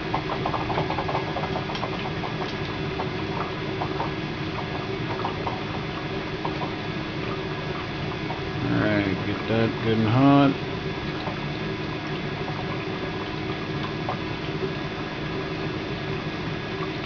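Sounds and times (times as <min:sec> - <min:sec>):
small crackles: 0:00.0 - 0:08.6
torch hissing and rumbling: 0:00.0 - 0:17.0.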